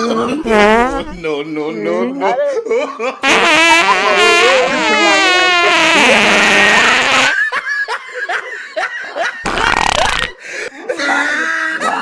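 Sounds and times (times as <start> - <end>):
fart noises: 0.4 - 1.2, 3.2 - 7.4, 9.4 - 10.4
laughter: 2.2 - 3.2, 7.3 - 12.0.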